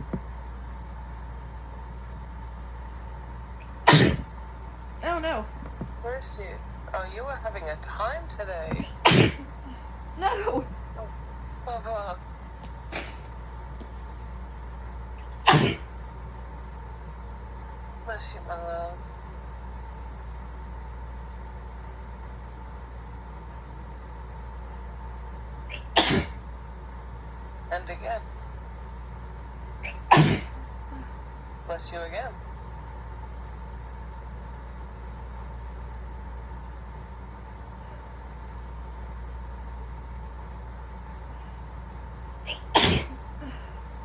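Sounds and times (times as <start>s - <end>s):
low background hum: 0.0s - 44.0s
person sneezing: 3.7s - 4.3s, 8.8s - 9.5s, 12.9s - 13.3s, 15.2s - 15.9s, 25.7s - 26.4s, 29.8s - 30.6s, 42.5s - 43.7s.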